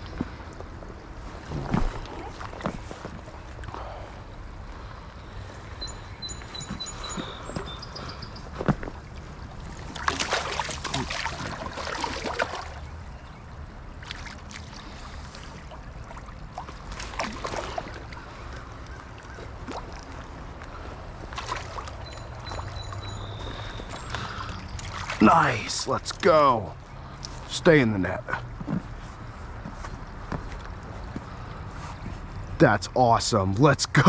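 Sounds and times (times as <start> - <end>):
running creek water: 0.0 - 34.0
fish splashing at surface: 9.7 - 12.9.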